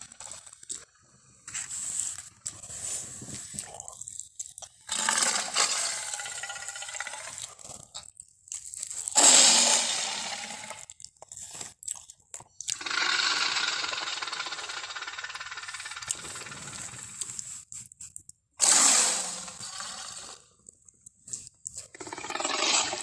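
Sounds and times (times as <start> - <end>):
loud creature calls: 9.2 - 10.8.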